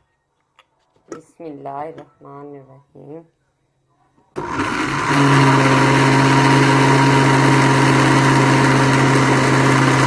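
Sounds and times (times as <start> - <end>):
blender motor whirring: 4.4 - 10.0.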